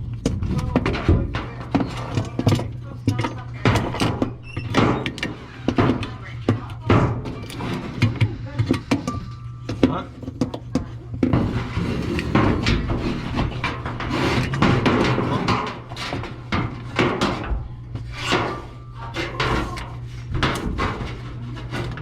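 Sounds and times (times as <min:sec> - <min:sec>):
scraping and clicking of machine parts: 0:00.0 - 0:22.0
steady low hum: 0:00.0 - 0:22.0.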